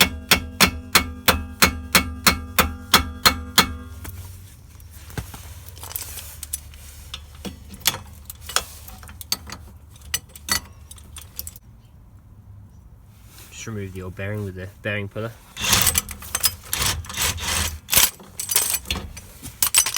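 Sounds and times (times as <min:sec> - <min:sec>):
metal tools clinking: 0:00.9 - 0:04.4, 0:05.5 - 0:11.6, 0:15.6 - 0:19.9.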